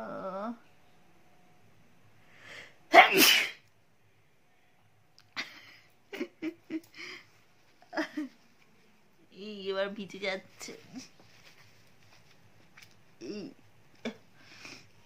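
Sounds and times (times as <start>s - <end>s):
woman inhaling: 2.3s - 2.8s
woman sneezing: 2.9s - 3.6s.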